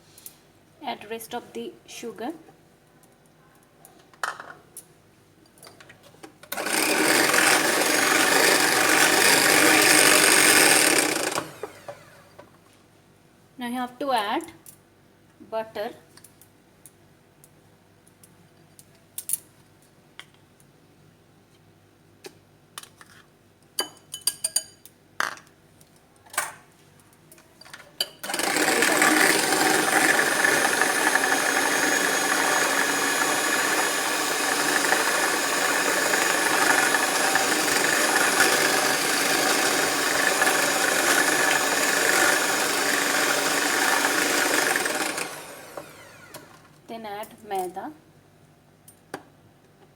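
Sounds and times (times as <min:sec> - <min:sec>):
electric mixer running: 0:06.5 - 0:12.4, 0:28.2 - 0:46.7.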